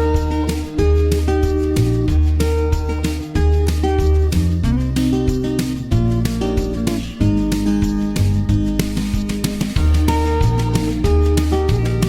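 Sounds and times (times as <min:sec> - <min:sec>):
strummed guitar music with beat: 0:00.0 - 0:12.0.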